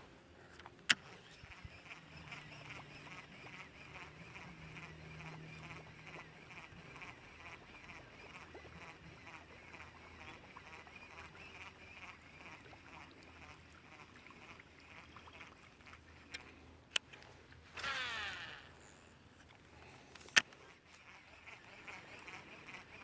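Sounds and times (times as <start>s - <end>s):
reel spool whirring: 0.0s - 23.0s
frogs calling: 0.9s - 23.0s
sharp clicks: 16.3s - 21.2s.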